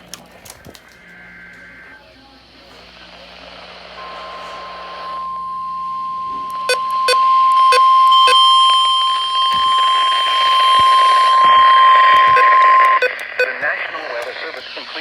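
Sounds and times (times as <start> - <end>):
steady alert beep: 5.1 - 13.6
sharp clicks: 12.1 - 13.6.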